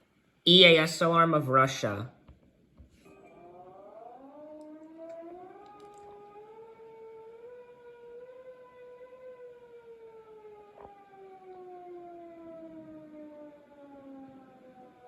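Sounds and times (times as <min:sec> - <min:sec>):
warning siren falling tone: 0:03.1 - 0:15.0
click: 0:04.6 - 0:06.1.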